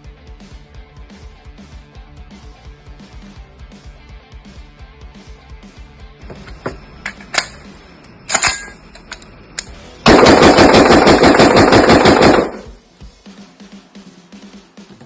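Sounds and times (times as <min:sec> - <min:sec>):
rapid gunfire burst: 0:10.0 - 0:12.8
rifle shots: 0:10.0 - 0:12.8.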